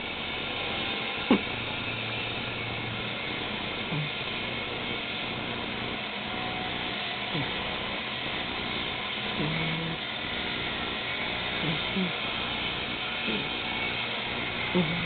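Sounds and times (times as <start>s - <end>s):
cat snoring squeaks: 1.2s - 1.8s, 3.7s - 4.3s, 7.3s - 7.8s, 9.3s - 10.1s, 11.5s - 12.3s, 13.2s - 13.6s, 14.4s - 15.0s.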